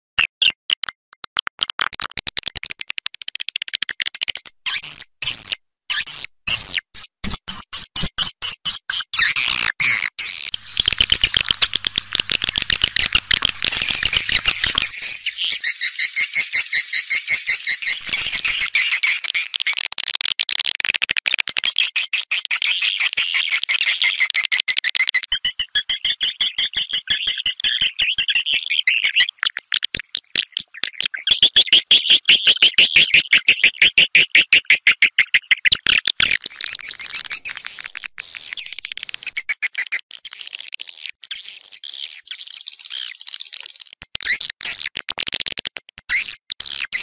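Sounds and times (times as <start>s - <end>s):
swiftlets twittering chirps: 10.5s - 19.6s, 25.4s - 39.8s.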